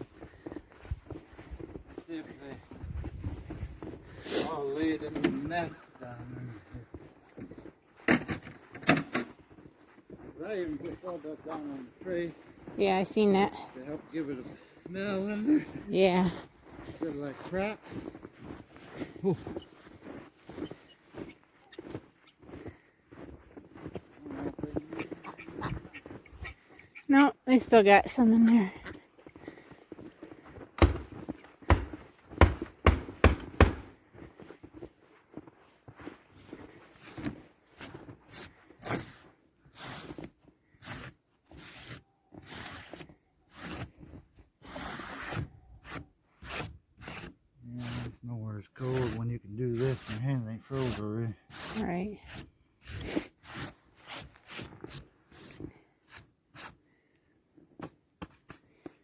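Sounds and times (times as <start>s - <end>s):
footsteps crunching: 0.0s - 41.7s
dull knocks with heavy thud: 30.8s - 34.0s
sharp scrapes: 44.6s - 48.1s.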